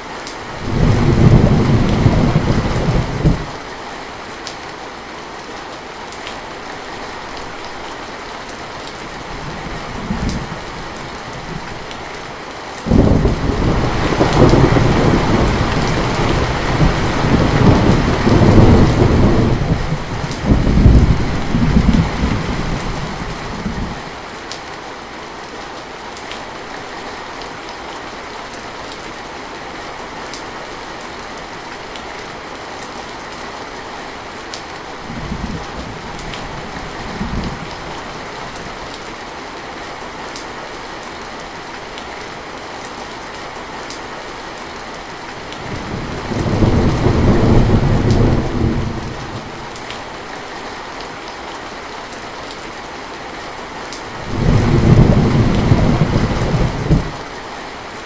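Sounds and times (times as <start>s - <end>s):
heavy rain: 0.0s - 58.0s
thunder rumbling: 0.6s - 3.5s, 12.9s - 24.0s, 45.6s - 49.8s, 54.2s - 57.2s.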